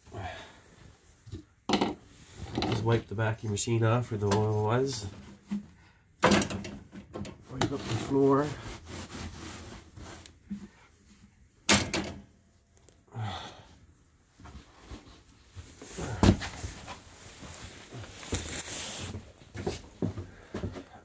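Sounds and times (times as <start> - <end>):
soft rubbing: 7.7 - 11.2.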